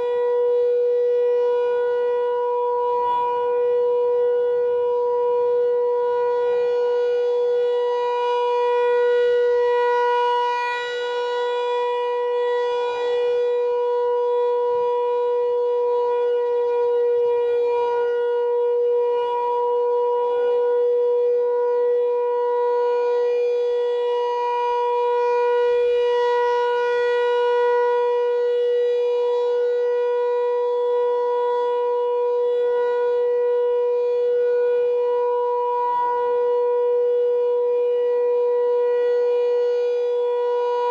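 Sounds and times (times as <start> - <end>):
outdoor warning siren: 0.0 - 40.9.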